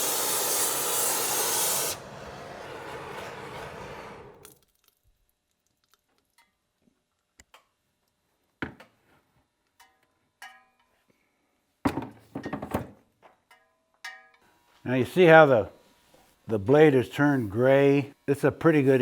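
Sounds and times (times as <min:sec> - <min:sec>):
heating torch hissing: 0:00.0 - 0:04.5.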